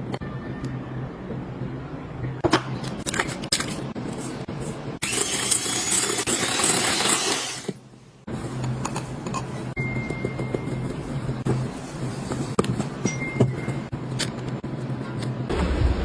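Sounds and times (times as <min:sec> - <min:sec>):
loud rushing noise: 0:15.5 - 0:16.0.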